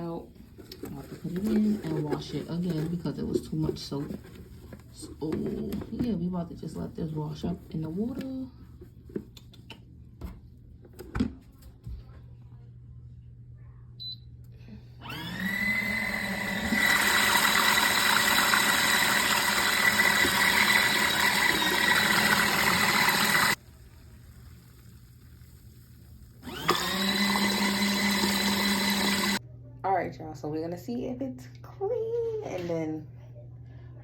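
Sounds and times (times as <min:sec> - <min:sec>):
washing machine motor whining: 0:15.0 - 0:23.6, 0:26.4 - 0:29.4.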